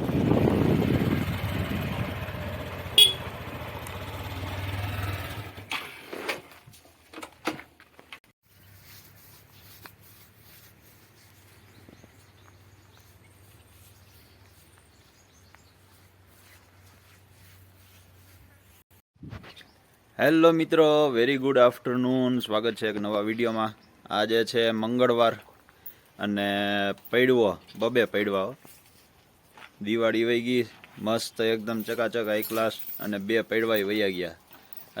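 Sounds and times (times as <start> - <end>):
vehicle engine running: 0.0 - 5.6
short sharp beep: 3.0 - 3.3.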